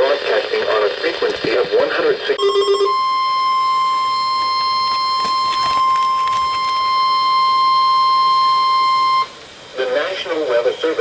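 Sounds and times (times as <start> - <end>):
steady warning alarm tone: 2.4 - 9.7.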